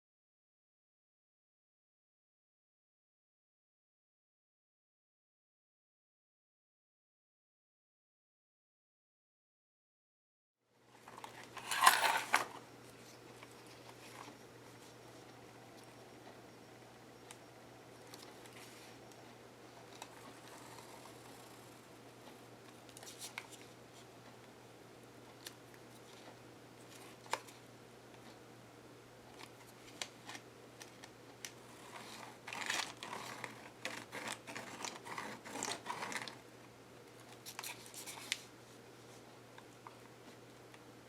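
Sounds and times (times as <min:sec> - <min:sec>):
faint low hum: 0:10.7 - 0:41.0
paper rustling: 0:11.2 - 0:12.6, 0:31.8 - 0:36.4.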